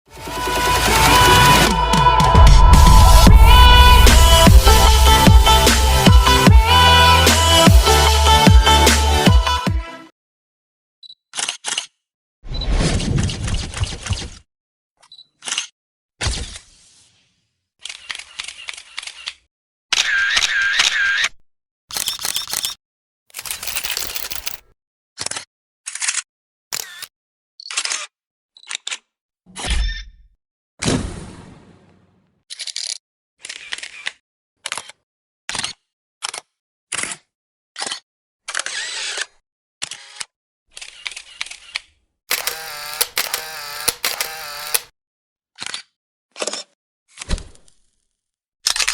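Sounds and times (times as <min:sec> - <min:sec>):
camera shutter clicks: 0:21.9 - 0:22.8, 0:23.4 - 0:24.6, 0:26.8 - 0:27.1, 0:42.3 - 0:44.9.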